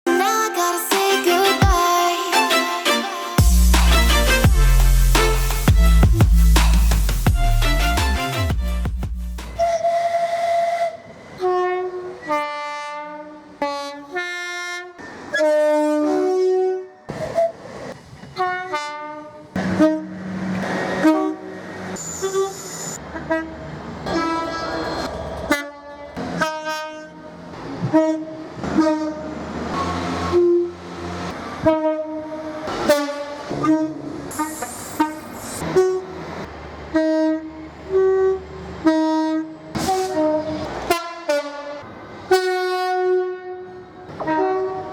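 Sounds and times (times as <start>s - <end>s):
train horn blasts: 1.7s - 6.2s, 9.5s - 17.5s, 18.4s - 30.8s, 31.6s - 36.3s, 36.9s - 44.9s
train rumble: 14.9s - 41.2s.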